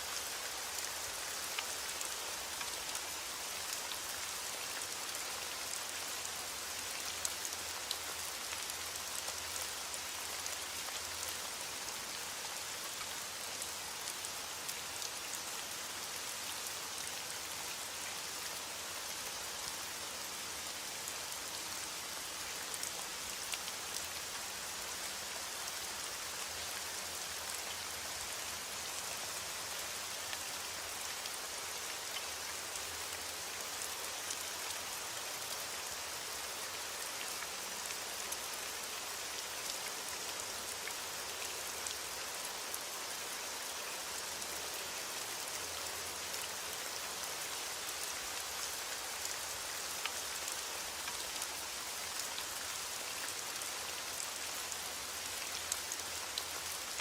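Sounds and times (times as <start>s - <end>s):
steady rain hissing: 0.0s - 57.0s
raindrops ticking on a surface: 0.2s - 15.4s.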